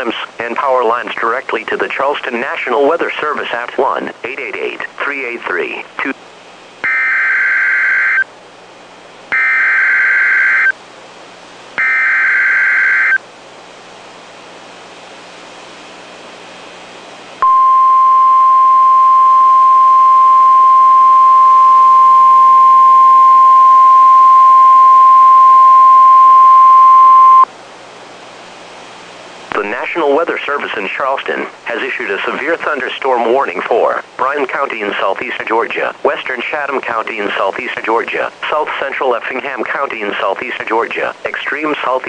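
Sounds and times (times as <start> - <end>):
steady alarm tone: 6.8 - 8.3, 9.3 - 10.8, 11.8 - 13.2, 17.4 - 27.5.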